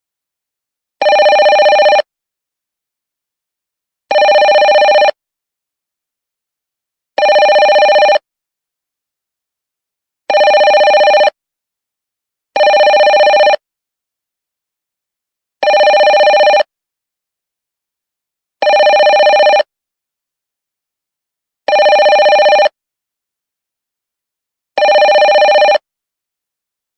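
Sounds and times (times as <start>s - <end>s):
telephone ringing: 1.0s - 2.1s, 4.1s - 5.2s, 7.2s - 8.3s, 10.3s - 11.4s, 12.6s - 13.6s, 15.6s - 16.7s, 18.6s - 19.7s, 21.7s - 22.8s, 24.8s - 25.9s.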